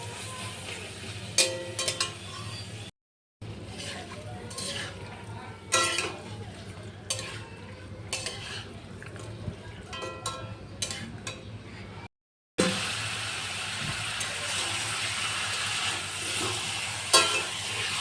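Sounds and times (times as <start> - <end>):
light sizzle: 0.0 - 9.8, 12.6 - 18.0
metal utensil scraping a pan: 0.5 - 2.9, 3.6 - 8.8, 9.9 - 11.5, 15.5 - 18.0.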